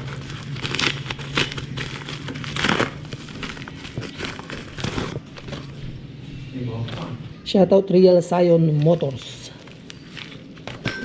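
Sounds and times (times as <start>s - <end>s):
packaging crinkling: 0.0s - 5.8s
steady low hum: 0.0s - 11.0s.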